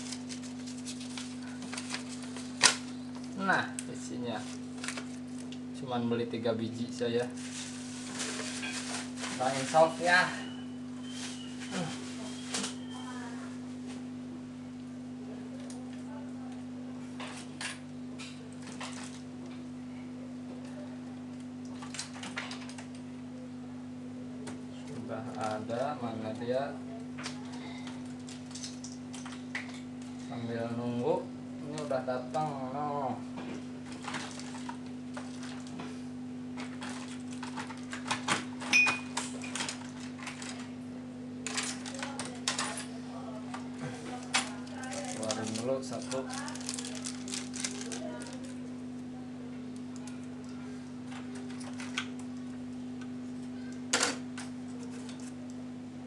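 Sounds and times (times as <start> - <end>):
plastic packaging clicks and rustles: 0.0 - 5.6, 7.2 - 10.3, 18.5 - 19.3, 21.7 - 23.0, 24.9 - 25.9, 33.8 - 35.8, 36.6 - 40.7, 41.4 - 42.9, 44.1 - 48.6, 51.1 - 52.4
electrical hum: 0.0 - 56.0.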